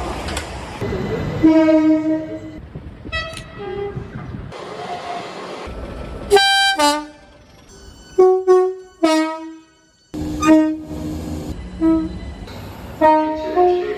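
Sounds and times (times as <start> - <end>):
moving train rumble: 0.0 - 13.9
train horn blasts: 1.3 - 4.1, 6.3 - 7.3, 8.1 - 12.2, 12.9 - 13.9.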